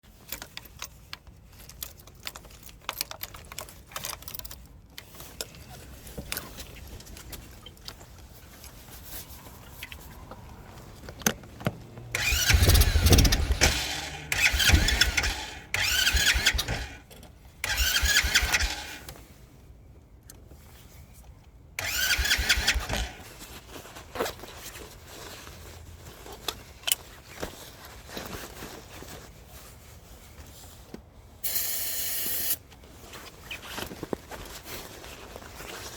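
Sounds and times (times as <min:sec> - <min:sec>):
small clicks and handling noises: 0:00.1 - 0:14.0, 0:22.6 - 0:29.3
motorcycle starter cranking: 0:12.1 - 0:19.1, 0:21.8 - 0:23.3.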